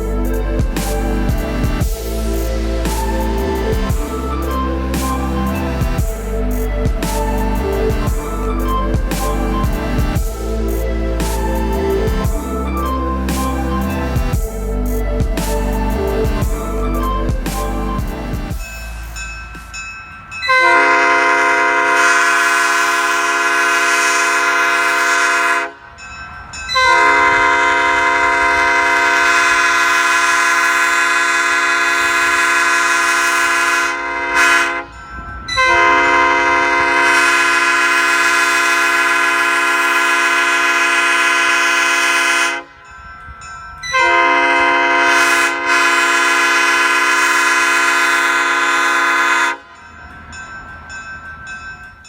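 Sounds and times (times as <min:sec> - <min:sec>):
locomotive air horn blasts: 0:20.5 - 0:25.8, 0:26.8 - 0:35.0, 0:35.6 - 0:42.8, 0:43.9 - 0:49.8.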